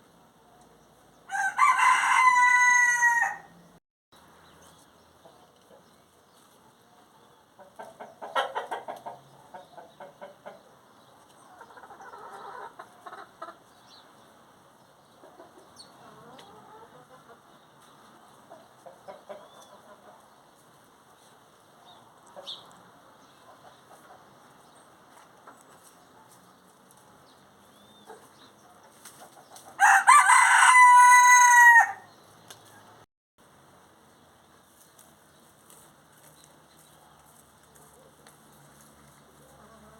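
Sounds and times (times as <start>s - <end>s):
rooster crowing: 1.3s - 3.5s, 29.8s - 32.1s
chickens clucking: 5.2s - 14.0s, 15.0s - 21.3s, 22.2s - 26.4s, 28.0s - 29.8s, 39.4s - 39.9s.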